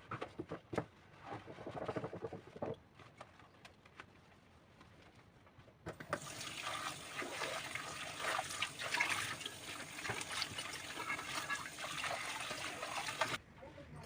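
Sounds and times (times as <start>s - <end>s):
water running from a tap: 6.1s - 13.4s.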